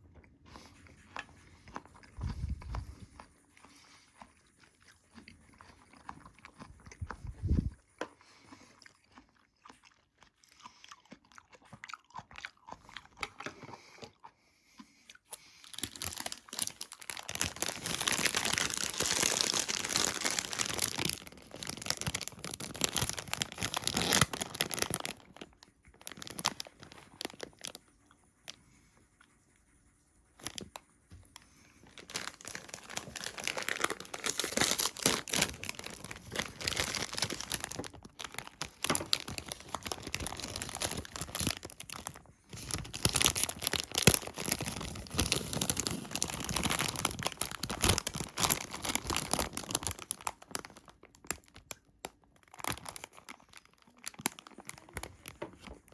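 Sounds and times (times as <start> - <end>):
food packaging crinkling and tearing: 15.6 - 27.8, 30.4 - 30.8, 31.8 - 55.9.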